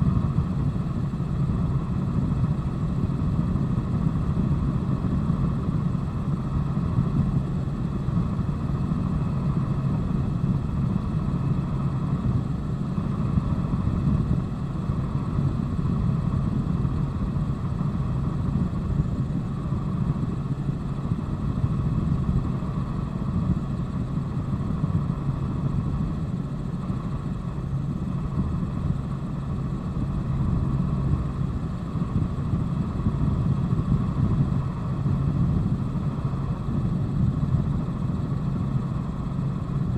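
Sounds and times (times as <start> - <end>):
helicopter engine and rotor drone: 0.0 - 39.9.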